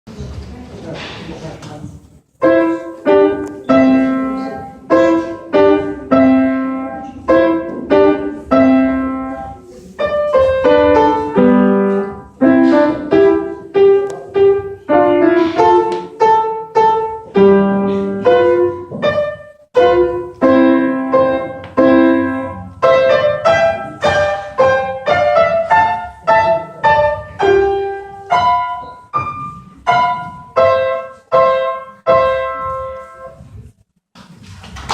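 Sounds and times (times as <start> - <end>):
piano playing tune: 2.4 - 33.6.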